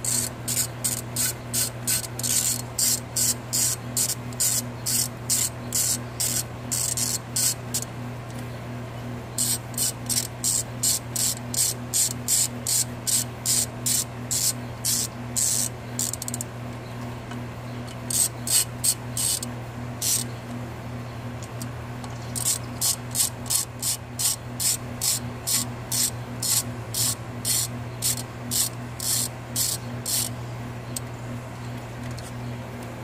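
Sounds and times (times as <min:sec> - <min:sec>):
ratchet wrench ratcheting: 0:00.0 - 0:07.9, 0:09.4 - 0:16.5, 0:18.1 - 0:20.3, 0:22.4 - 0:30.3
steady low hum: 0:00.0 - 0:33.0.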